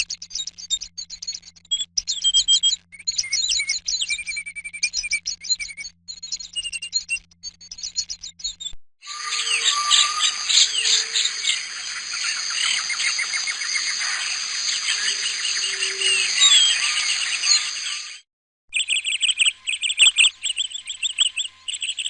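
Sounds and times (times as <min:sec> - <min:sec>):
small birds chirping: 0:07.6 - 0:22.0
insect drone: 0:09.1 - 0:18.2.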